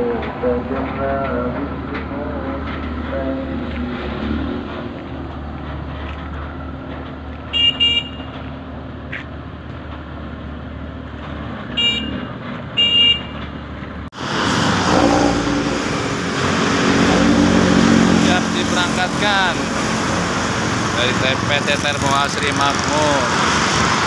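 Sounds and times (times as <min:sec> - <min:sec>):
low engine rumble: 0:00.0 - 0:24.0
high-pitched vehicle horn toots: 0:07.5 - 0:08.3, 0:11.8 - 0:13.4
loud rushing noise: 0:14.1 - 0:24.0.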